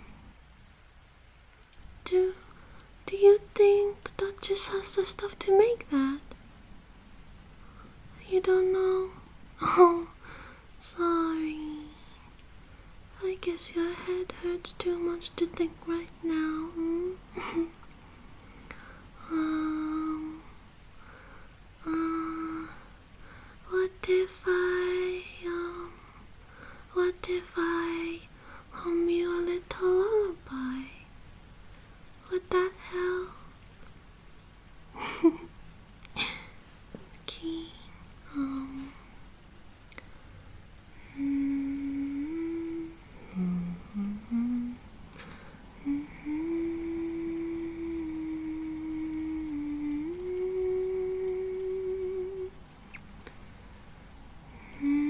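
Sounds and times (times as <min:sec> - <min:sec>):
white noise hiss: 0:00.0 - 0:55.0
woman humming: 0:02.0 - 0:02.5, 0:08.2 - 0:10.2, 0:13.2 - 0:17.8, 0:19.2 - 0:20.5, 0:21.8 - 0:22.8, 0:37.3 - 0:39.0, 0:41.0 - 0:44.9, 0:45.8 - 0:52.6, 0:54.6 - 0:55.0.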